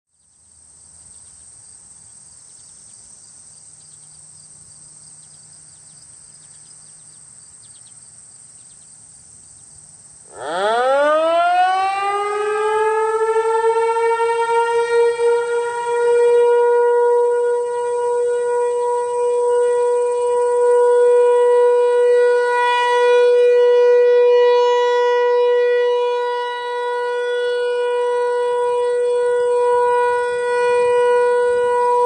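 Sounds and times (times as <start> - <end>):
warning siren wailing: 10.3 - 32.0.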